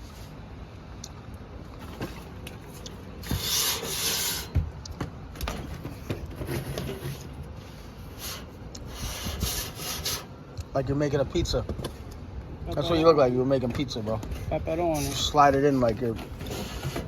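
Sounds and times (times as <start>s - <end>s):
air filters scraping: 1.7s - 10.4s, 13.6s - 17.0s
loud rubbing rush: 3.2s - 4.6s, 8.2s - 10.3s.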